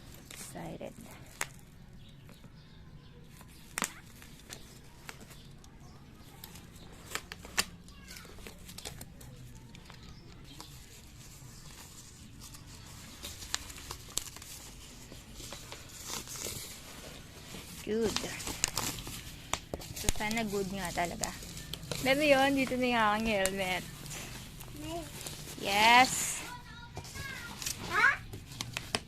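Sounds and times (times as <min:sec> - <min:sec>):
packaging tearing and crinkling: 0:12.2 - 0:26.4.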